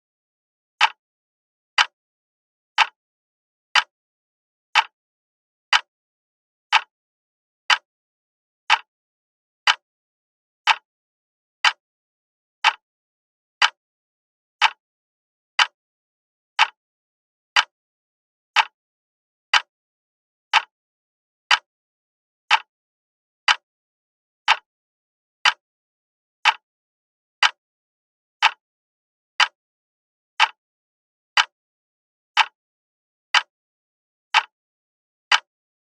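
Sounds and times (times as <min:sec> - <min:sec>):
alarm clock ticking: 0:02.8 - 0:03.0, 0:07.7 - 0:07.9, 0:08.7 - 0:08.9, 0:09.7 - 0:09.9, 0:10.6 - 0:10.9, 0:13.6 - 0:13.8, 0:15.6 - 0:15.8, 0:17.6 - 0:17.8, 0:19.5 - 0:19.7, 0:23.5 - 0:23.7, 0:25.4 - 0:25.6, 0:27.4 - 0:27.6, 0:33.3 - 0:33.5, 0:34.3 - 0:34.5, 0:35.3 - 0:35.5.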